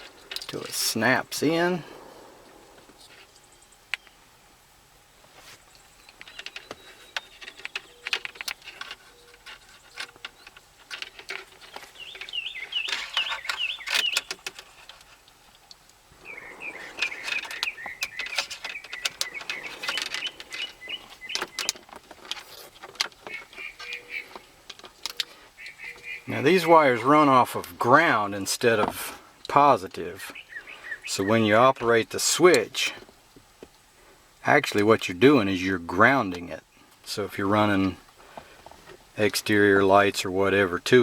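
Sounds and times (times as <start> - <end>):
plastic parts clicking and rattling: 0.0 - 0.7, 5.8 - 16.0, 16.6 - 25.8
rapid high squeaky chirps: 16.2 - 21.9, 23.2 - 24.6.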